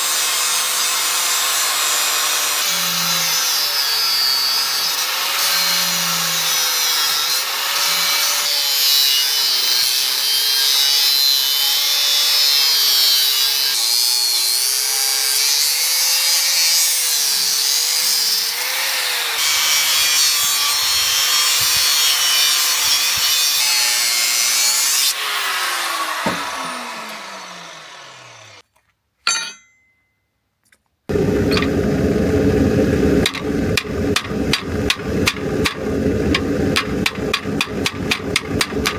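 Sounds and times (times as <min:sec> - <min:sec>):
power tool grinding: 0:00.0 - 0:11.1, 0:16.5 - 0:28.6, 0:31.1 - 0:38.9
dense noise: 0:31.1 - 0:38.9.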